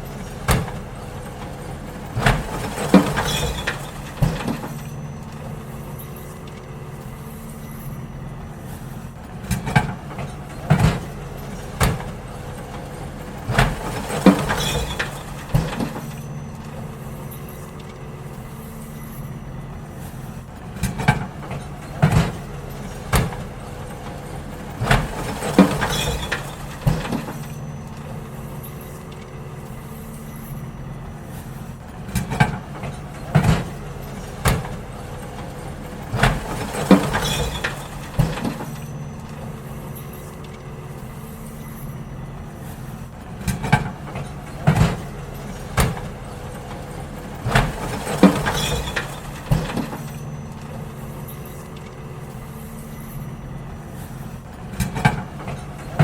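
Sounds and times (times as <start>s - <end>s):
bins knocking and banging: 0.0s - 6.8s, 8.9s - 19.0s, 20.2s - 29.3s, 31.1s - 52.1s, 54.0s - 56.0s
garbage truck engine running: 0.0s - 56.0s.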